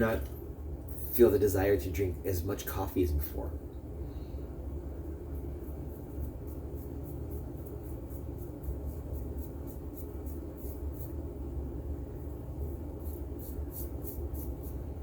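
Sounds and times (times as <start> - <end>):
razor scraping stubble: 5.3 - 11.3, 12.6 - 14.9.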